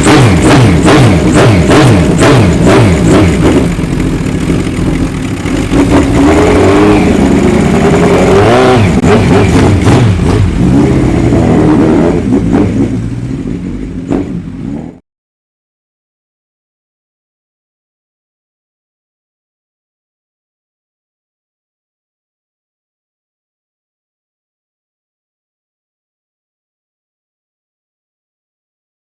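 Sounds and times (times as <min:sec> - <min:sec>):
mechanical clatter: 0:00.0 - 0:10.6
motorcycle engine revving: 0:00.0 - 0:15.0.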